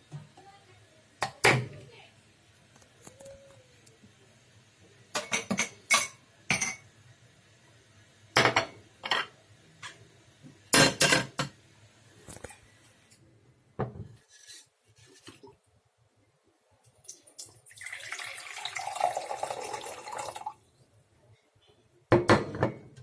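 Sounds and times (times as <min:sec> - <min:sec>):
dishes and utensils clattering: 0:05.1 - 0:06.9, 0:08.4 - 0:10.0, 0:10.7 - 0:11.6.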